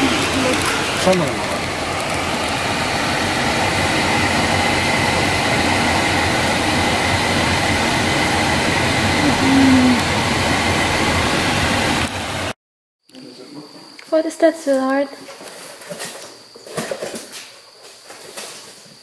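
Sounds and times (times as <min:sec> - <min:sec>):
faint high whine: 0:00.0 - 0:12.5
vehicle running: 0:00.0 - 0:12.5.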